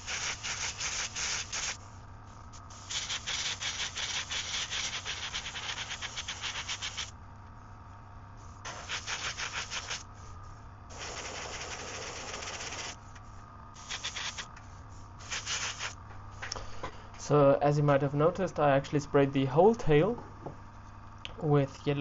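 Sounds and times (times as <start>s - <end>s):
airbrush spraying hiss: 0.0s - 7.2s, 8.4s - 13.1s, 13.8s - 16.4s.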